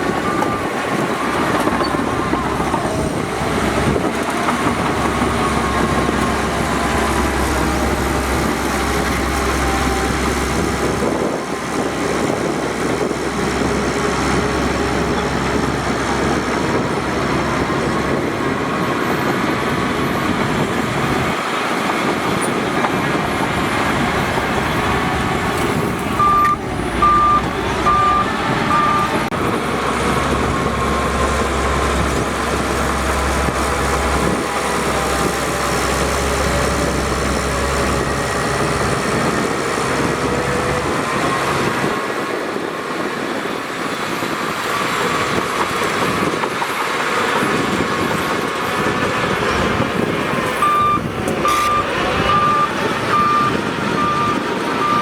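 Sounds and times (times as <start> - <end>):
heavy diesel machinery running: 0.0 - 55.0
reversing alarm beeps: 26.2 - 29.2, 50.6 - 55.0.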